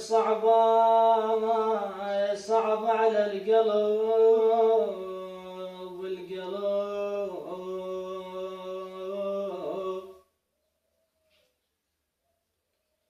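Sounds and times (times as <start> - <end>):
man singing unaccompanied: 0.0 - 10.3.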